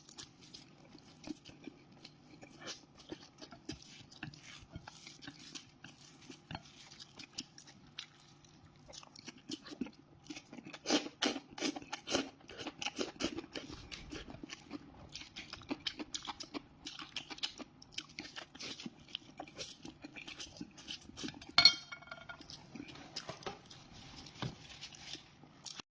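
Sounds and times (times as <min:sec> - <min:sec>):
chewing and crunching food: 0:00.0 - 0:21.6, 0:22.3 - 0:25.8
utensil clinking on a plate: 0:21.6 - 0:22.5.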